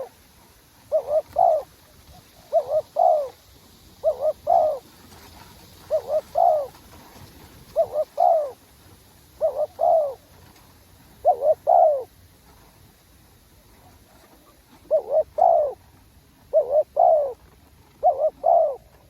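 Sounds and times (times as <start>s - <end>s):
dove cooing: 0.9s - 8.6s, 9.4s - 10.3s, 11.2s - 12.2s, 13.8s - 15.9s, 16.5s - 19.0s.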